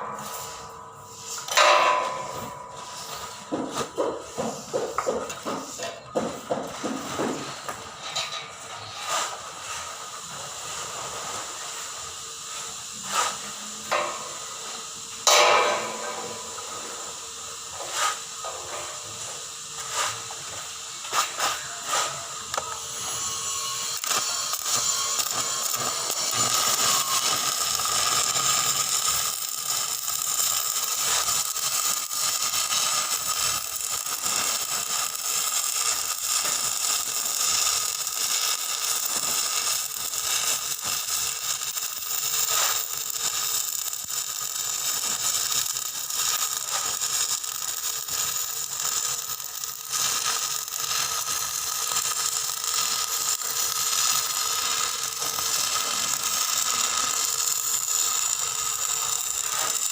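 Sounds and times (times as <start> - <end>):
welding arc crackling and hissing: 0.0 - 59.9.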